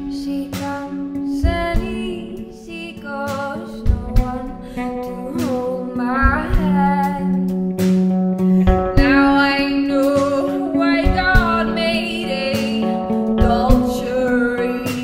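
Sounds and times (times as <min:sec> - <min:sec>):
woman singing: 0:00.0 - 0:07.8, 0:08.6 - 0:15.0
guitar: 0:00.0 - 0:15.0
drum hits: 0:03.7 - 0:05.6, 0:08.7 - 0:09.5, 0:11.0 - 0:11.8.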